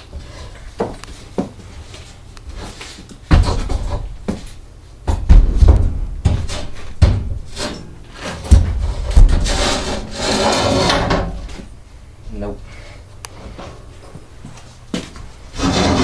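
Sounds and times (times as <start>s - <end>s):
steel plate thuds and clunks: 5.0s - 11.5s
rough scraping of steel: 9.3s - 11.3s, 15.5s - 16.0s.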